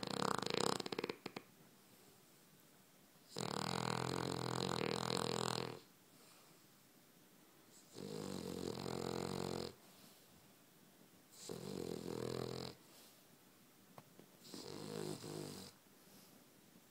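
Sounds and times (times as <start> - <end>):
dog snoring: 0.0 - 1.5, 3.3 - 5.9, 7.7 - 9.8, 11.3 - 13.1, 14.4 - 15.8
dog breathing quietly: 8.9 - 10.5, 11.3 - 13.4.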